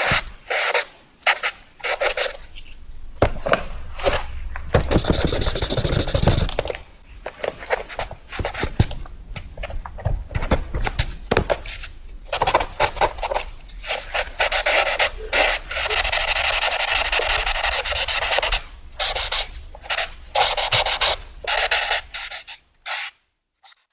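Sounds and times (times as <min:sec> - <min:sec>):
pencil scratching on paper: 0:00.0 - 0:02.5, 0:03.2 - 0:06.8, 0:10.3 - 0:23.1.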